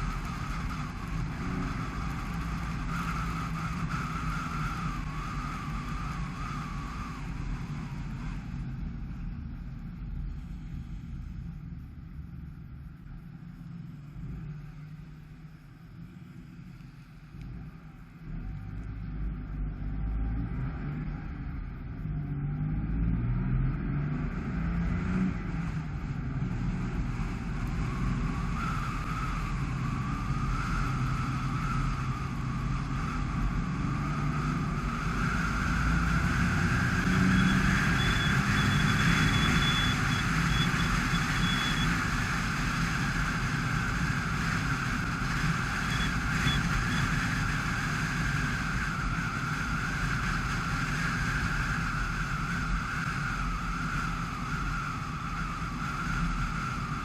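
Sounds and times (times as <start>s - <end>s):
car engine accelerating: 15.8s - 57.0s.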